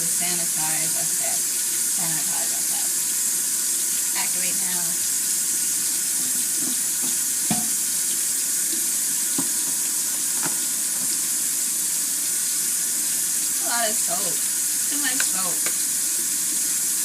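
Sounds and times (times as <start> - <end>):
pan being washed: 0.0 - 17.0
tap running into sink: 5.9 - 11.4, 15.1 - 16.6.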